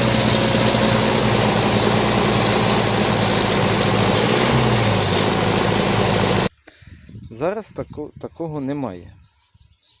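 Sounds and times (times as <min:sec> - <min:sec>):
tractor diesel engine running: 0:00.0 - 0:06.5.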